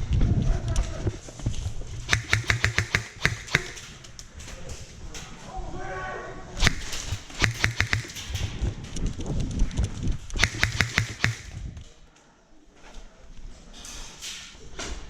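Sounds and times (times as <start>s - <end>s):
airsoft guns firing: 2.1s - 4.4s, 6.6s - 8.6s, 10.4s - 11.7s.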